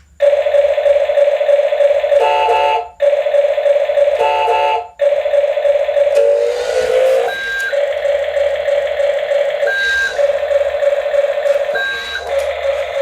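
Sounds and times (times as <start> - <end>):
warbling electronic chirp: 5.9 - 13.0
buzzy electronic tone: 6.1 - 13.0.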